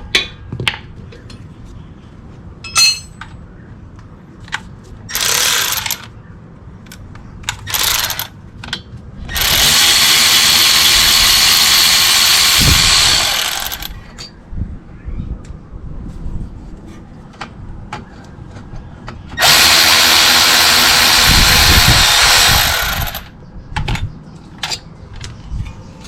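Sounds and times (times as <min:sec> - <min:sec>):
cordless power tool whirring: 0:09.3 - 0:13.9, 0:19.4 - 0:23.3.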